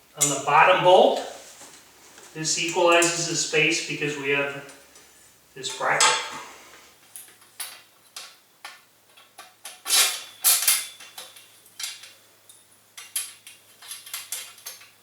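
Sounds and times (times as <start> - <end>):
metal parts clinking and knocking: 7.1 - 15.0.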